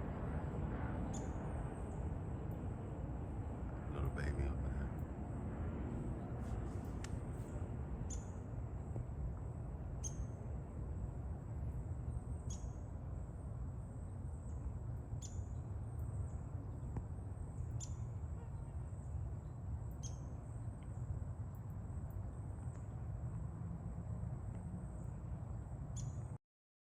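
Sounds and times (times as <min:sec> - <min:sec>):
faint high whine: 0:00.0 - 0:26.4
bird chirping: 0:17.6 - 0:18.7.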